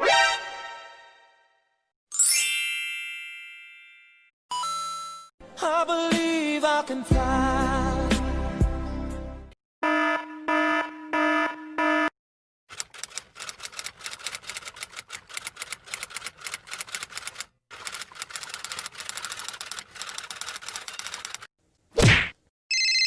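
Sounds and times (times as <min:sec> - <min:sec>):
typing on keys: 0:12.7 - 0:21.5.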